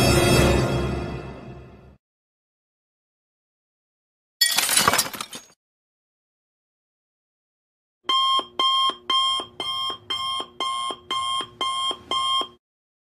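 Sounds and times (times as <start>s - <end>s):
alarm clock beeping: 8.1s - 12.6s.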